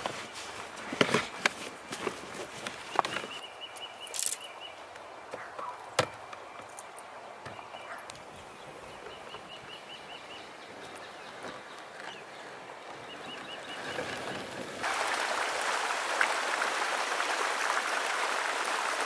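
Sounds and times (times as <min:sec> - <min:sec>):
bird chirping: 0:02.9 - 0:14.6.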